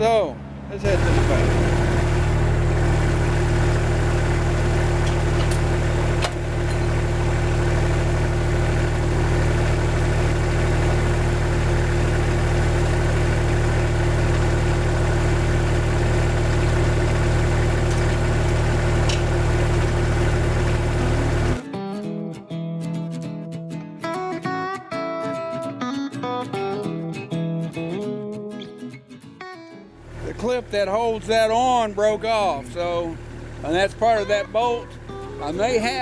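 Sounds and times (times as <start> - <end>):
tractor diesel engine running: 0.8 - 21.6, 30.0 - 36.0.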